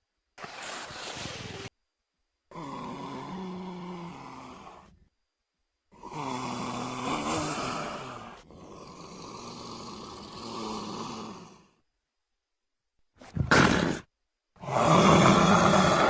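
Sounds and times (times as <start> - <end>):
creature growl with hissing edge: 2.5 - 5.0, 5.9 - 11.8, 13.4 - 16.0.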